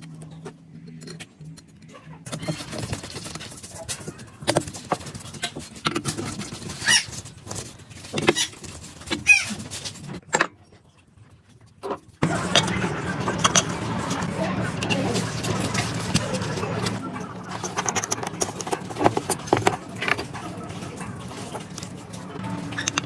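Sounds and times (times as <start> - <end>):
low motor hum: 12.2 - 23.0
metal parts clicking and knocking: 14.8 - 20.3, 22.7 - 23.0.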